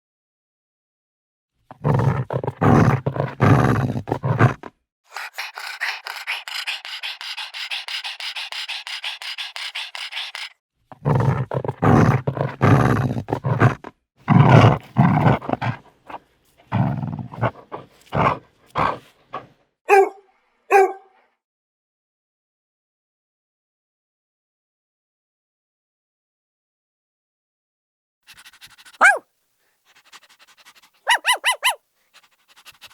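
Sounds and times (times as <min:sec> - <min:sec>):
dogs growling and snarling: 0:01.7 - 0:19.6, 0:28.3 - 0:29.2, 0:29.9 - 0:32.9
dog barks: 0:18.2 - 0:21.2, 0:28.4 - 0:29.2, 0:30.0 - 0:32.3.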